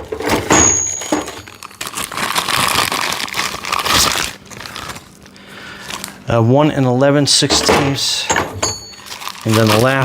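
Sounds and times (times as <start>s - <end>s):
packaging rustling: 0.1s - 6.2s, 8.8s - 10.0s.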